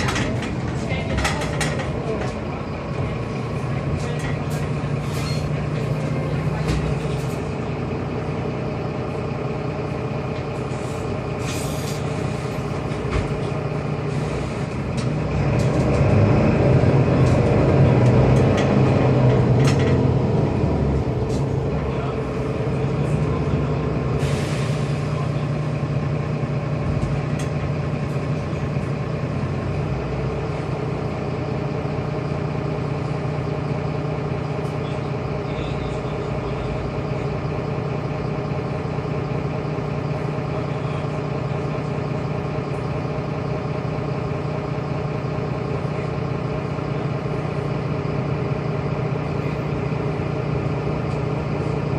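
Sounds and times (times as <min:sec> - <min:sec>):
bus body rattling: 0:00.0 - 0:51.9
bus engine running: 0:00.0 - 0:51.9
air hissing: 0:10.7 - 0:12.6, 0:14.1 - 0:14.8, 0:24.2 - 0:25.3.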